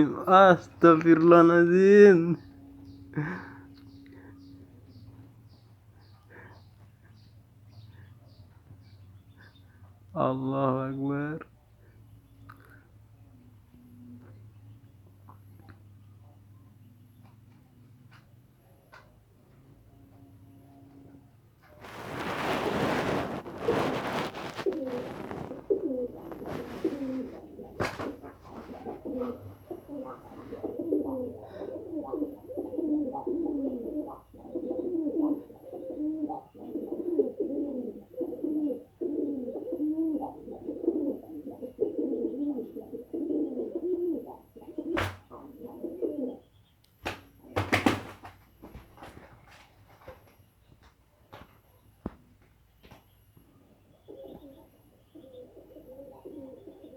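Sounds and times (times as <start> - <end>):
doves cooing: 0.0 - 12.8, 21.8 - 50.4, 53.1 - 56.9.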